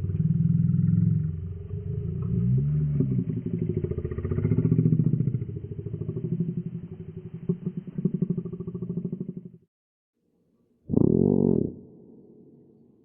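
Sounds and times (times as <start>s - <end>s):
low rattling creature growl: 0.0s - 9.5s.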